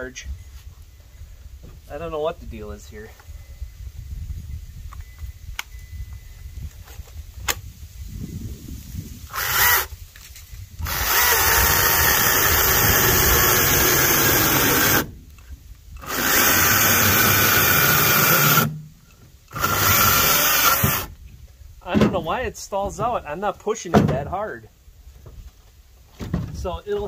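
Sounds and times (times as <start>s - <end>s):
electric chainsaw running: 9.3s - 10.0s, 10.8s - 15.1s, 16.0s - 18.8s, 19.5s - 21.1s.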